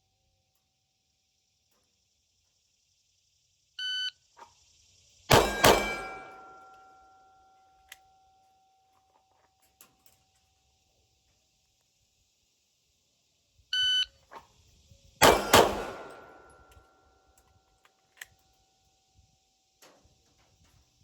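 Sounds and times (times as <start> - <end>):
pistol shots: 5.3 - 6.6, 15.2 - 16.8
shot timer beep: 13.8 - 14.1.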